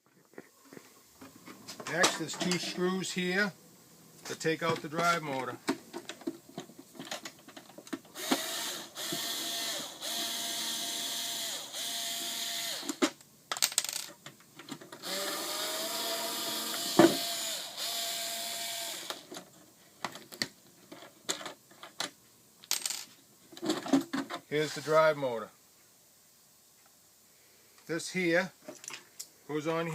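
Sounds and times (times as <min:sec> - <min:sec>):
power drill whirring: 0:08.1 - 0:13.0, 0:15.0 - 0:19.3.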